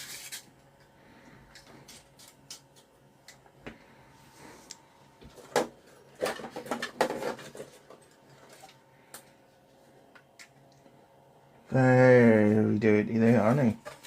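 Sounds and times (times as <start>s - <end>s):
faint electrical hum: 0.0s - 14.0s.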